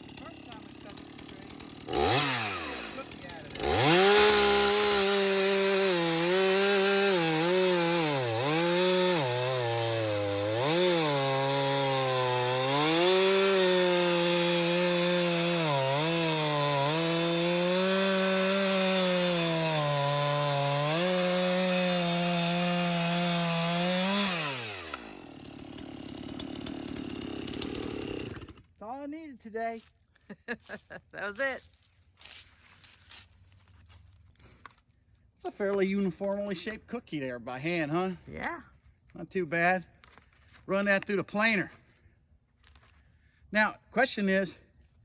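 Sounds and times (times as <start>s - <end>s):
chainsaw cutting through log: 0.0s - 28.8s.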